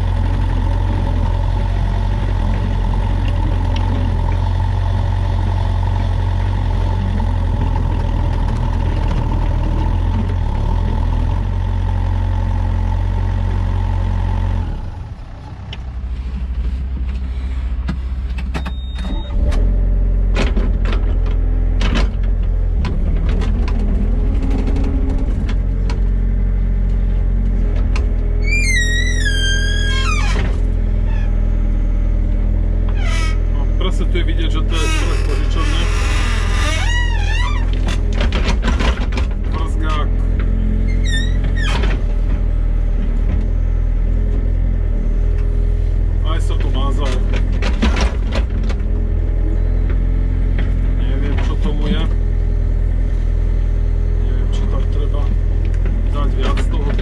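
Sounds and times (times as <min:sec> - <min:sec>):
excavator diesel engine running: 0:00.0 - 0:57.0
machine clanks and knocks: 0:37.7 - 0:39.8, 0:46.6 - 0:48.8.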